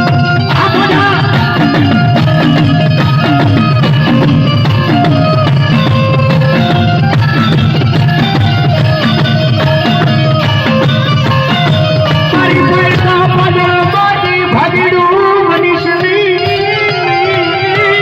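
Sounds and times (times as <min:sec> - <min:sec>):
folk melody of held notes: 0:00.0 - 0:18.0
steady drum beats: 0:00.0 - 0:18.0.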